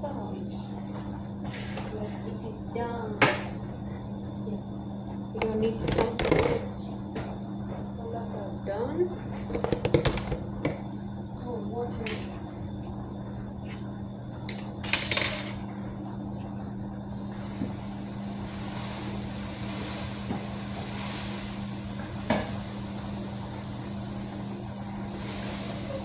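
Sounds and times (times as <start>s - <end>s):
steady low hum: 0.0s - 26.0s
pots and utensils clattering: 9.4s - 10.8s, 14.5s - 15.6s.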